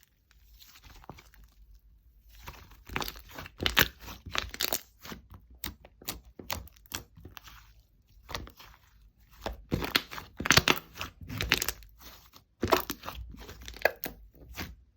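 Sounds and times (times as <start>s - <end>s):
slime crackling and popping: 2.4s - 7.6s, 8.2s - 14.8s.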